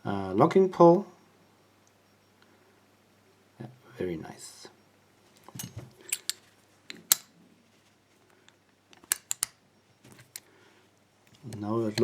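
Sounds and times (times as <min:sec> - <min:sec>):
padlock parts clicking: 0:05.5 - 0:07.4, 0:08.4 - 0:10.5.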